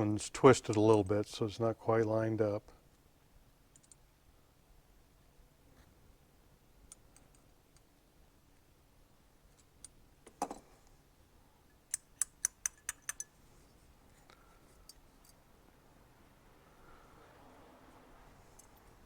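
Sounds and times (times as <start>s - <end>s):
metal tools clicking and tapping: 11.7s - 13.4s, 14.8s - 15.4s
sharp clicks: 11.9s - 13.3s.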